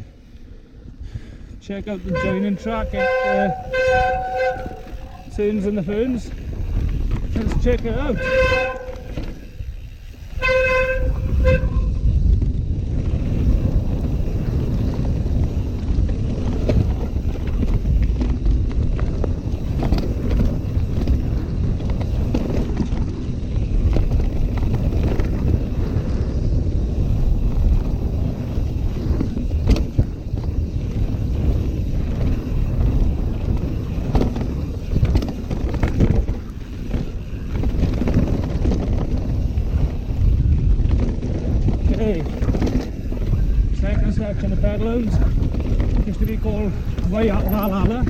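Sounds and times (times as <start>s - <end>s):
bike rattling on rough ground: 0.0s - 48.0s
wind buffeting microphone: 0.0s - 48.0s
short horn toot: 2.0s - 5.4s, 8.0s - 9.4s, 10.3s - 12.0s.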